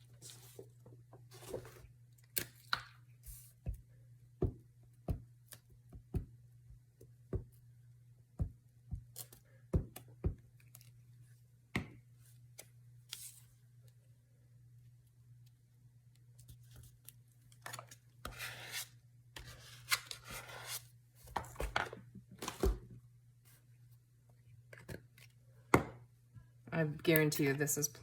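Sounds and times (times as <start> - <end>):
paper rustling: 1.3 - 1.9.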